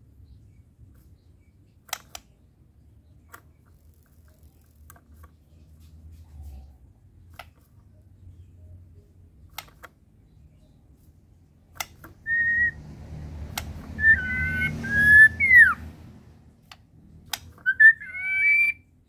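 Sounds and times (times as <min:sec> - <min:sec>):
faint low hum: 0:00.0 - 0:14.1
sharp clicks and taps: 0:13.4 - 0:14.0.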